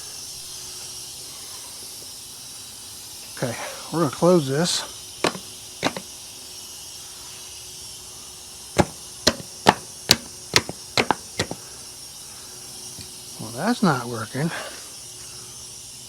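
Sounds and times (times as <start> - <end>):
sharp knocks on metal: 5.2 - 6.1, 8.8 - 11.6.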